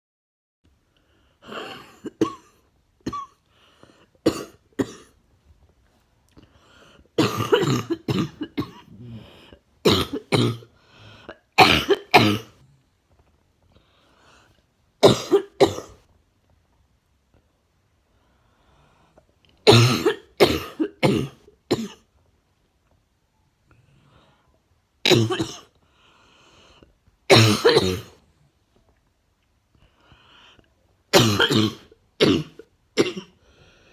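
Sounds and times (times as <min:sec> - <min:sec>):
woman coughing: 0:01.5 - 0:03.4, 0:04.2 - 0:05.2, 0:07.2 - 0:08.9, 0:09.8 - 0:10.7, 0:11.6 - 0:12.5, 0:15.0 - 0:16.0, 0:19.7 - 0:22.0, 0:25.1 - 0:25.7, 0:27.3 - 0:28.2, 0:31.2 - 0:33.4.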